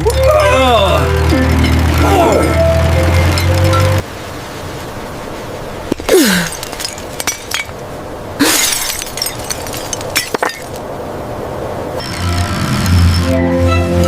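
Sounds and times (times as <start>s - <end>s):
glass crashing: 6.0s - 7.8s, 8.4s - 10.8s
glass pieces clinking: 6.4s - 7.8s, 8.4s - 10.8s.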